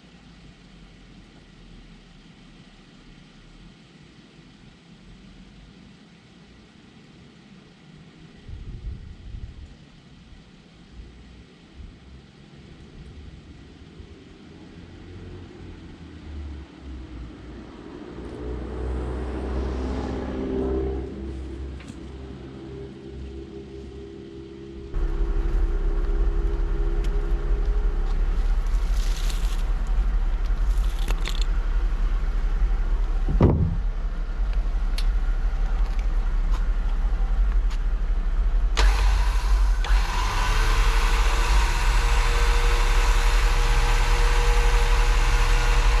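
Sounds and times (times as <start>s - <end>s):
vehicle engine rumbling: 0.0s - 46.0s.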